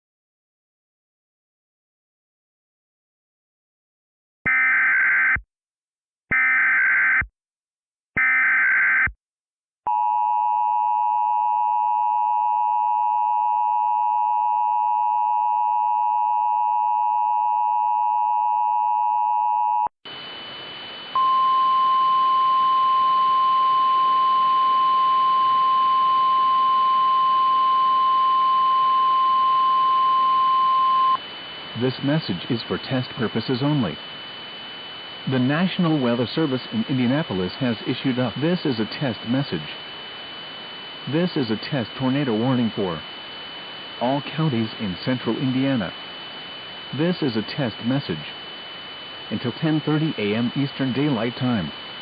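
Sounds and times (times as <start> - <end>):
steady warning alarm tone: 20.1 - 52.0.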